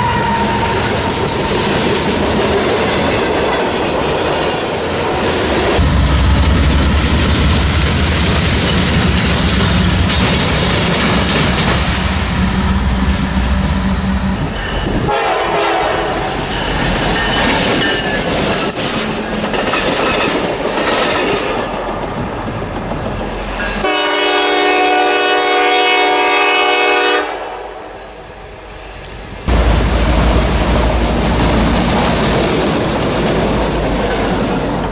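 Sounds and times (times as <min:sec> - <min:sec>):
locomotive air horn: 0:00.0 - 0:01.4, 0:15.0 - 0:16.4, 0:23.8 - 0:28.0
trains rumbling past: 0:00.0 - 0:34.9.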